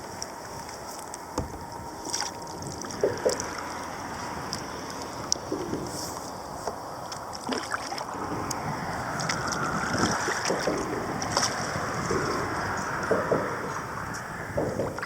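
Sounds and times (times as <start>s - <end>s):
water lapping around kayak: 0.0s - 15.0s
wind noise on microphone: 0.0s - 15.0s
knocks on kayak: 1.4s - 1.6s.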